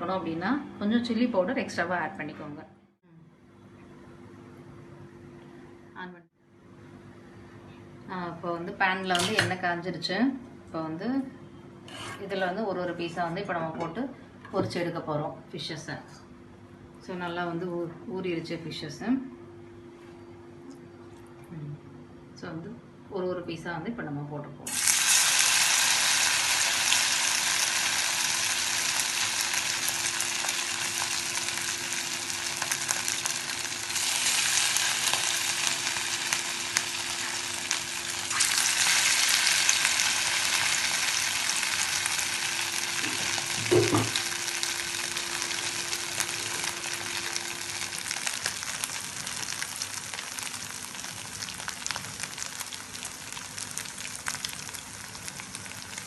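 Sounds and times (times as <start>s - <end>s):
fish sizzling in hot oil: 24.7s - 56.0s.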